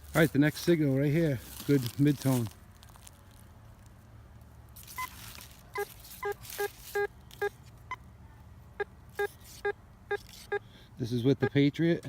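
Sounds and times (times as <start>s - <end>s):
metal detector beeping: 4.8s - 8.0s, 8.8s - 10.6s, 11.4s - 11.6s.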